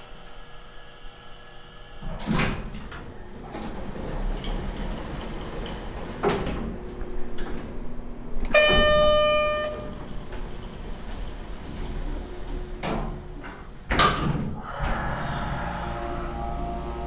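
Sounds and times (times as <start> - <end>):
elevator mechanical rumble: 0.1 - 17.0
elevator clunk: 2.1 - 17.0
elevator arrival tone: 2.6 - 13.8, 14.6 - 17.0.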